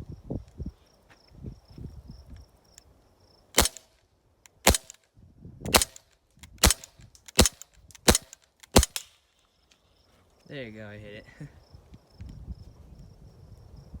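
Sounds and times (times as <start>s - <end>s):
faint insect chirping: 0.0s - 3.5s, 9.2s - 14.0s
bb pistol shots cracking: 3.6s - 3.9s, 4.5s - 5.0s, 5.7s - 9.2s.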